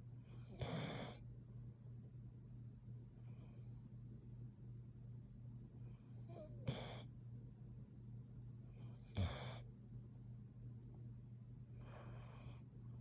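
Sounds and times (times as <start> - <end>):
steady low hum: 0.0 - 13.0
dog snoring softly: 0.2 - 1.9, 5.8 - 7.1, 8.7 - 9.7, 11.8 - 13.0.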